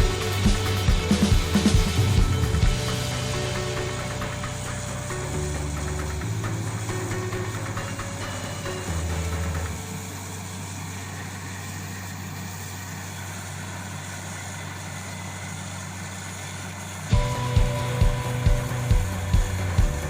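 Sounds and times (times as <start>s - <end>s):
loud regular thumps: 0.0s - 8.3s
heavy engine idling: 0.0s - 20.0s.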